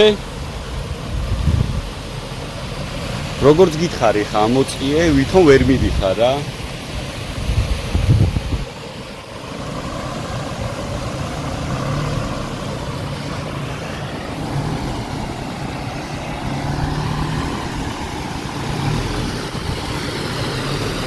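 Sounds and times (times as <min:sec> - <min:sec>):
car engine revving: 0:08.9 - 0:21.0.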